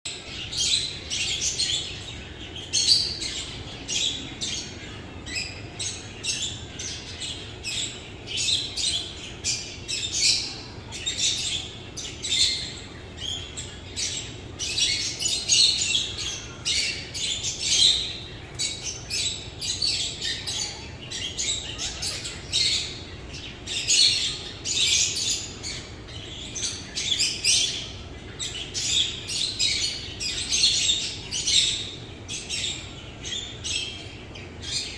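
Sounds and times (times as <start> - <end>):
small birds chirping and squawking: 0.1 - 34.9.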